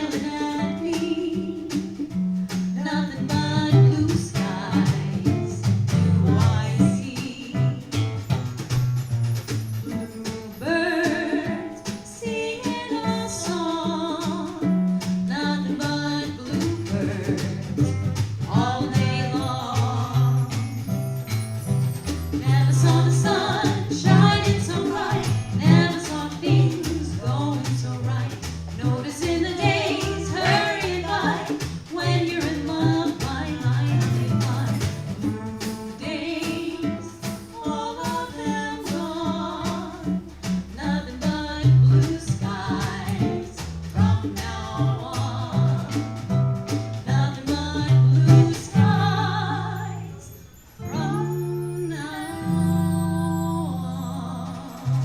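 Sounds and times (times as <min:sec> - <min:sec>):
hand percussion: 0:00.0 - 0:55.0
guitar chords: 0:50.8 - 0:55.0.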